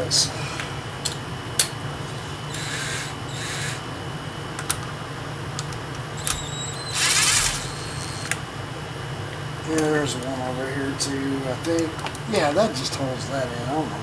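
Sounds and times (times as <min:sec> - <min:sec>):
steady low hum: 0:00.0 - 0:14.0
cordless power tool whining: 0:01.6 - 0:04.9, 0:05.7 - 0:08.8.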